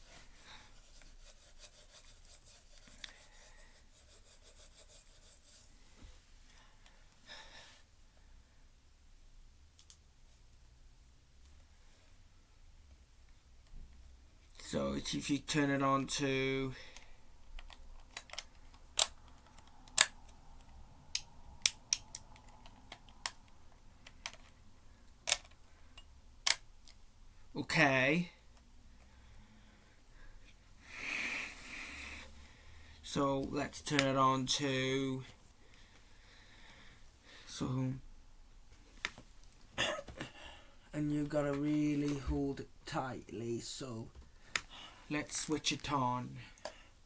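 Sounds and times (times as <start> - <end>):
rubbing and rustling: 0.0 - 6.5
small plastic clicks: 17.0 - 24.6.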